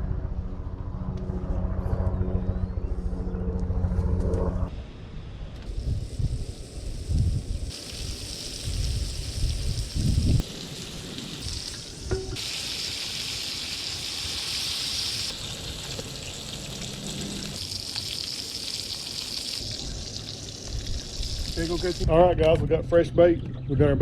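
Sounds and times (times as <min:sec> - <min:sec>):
running water hiss: 0:05.7 - 0:22.1.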